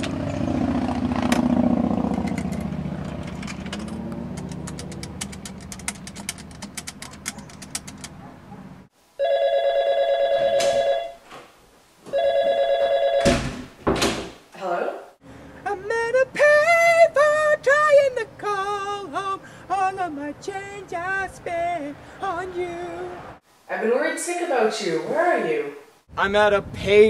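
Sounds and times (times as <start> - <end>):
vehicle rumble: 0.0 - 8.9
telephone ringing: 9.2 - 11.2, 12.1 - 13.4.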